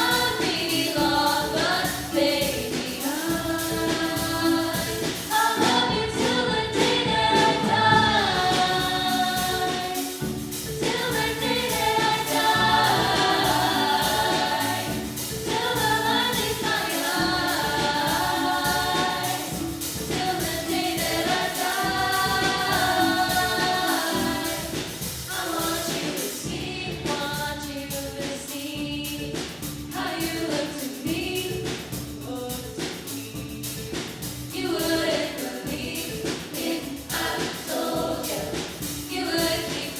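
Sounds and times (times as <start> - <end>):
choir singing: 0.0 - 27.6, 29.9 - 31.4, 34.5 - 39.9.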